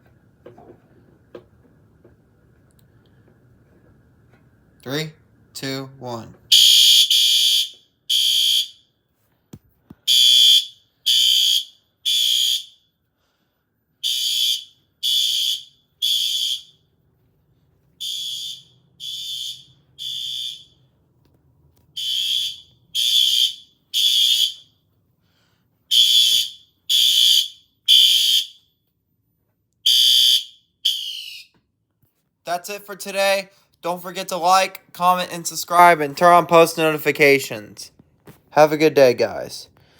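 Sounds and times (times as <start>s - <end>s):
fire alarm horn blasts: 6.5s - 9.0s, 10.1s - 13.0s, 14.0s - 17.0s, 18.0s - 20.9s, 21.9s - 24.9s, 25.9s - 28.8s, 29.8s - 31.6s.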